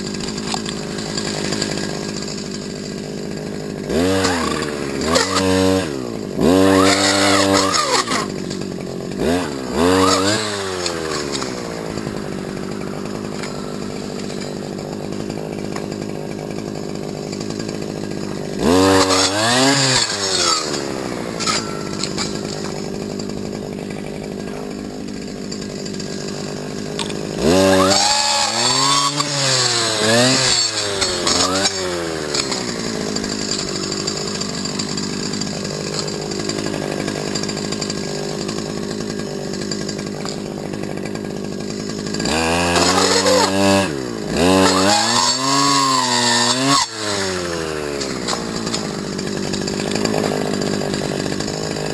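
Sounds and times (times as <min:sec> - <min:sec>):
brush cutter engine idling and revving: 0:00.0 - 0:51.9.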